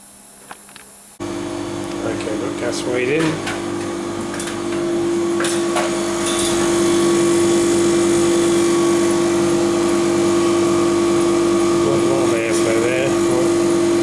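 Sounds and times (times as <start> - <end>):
fridge motor hum: 0.0 - 14.0.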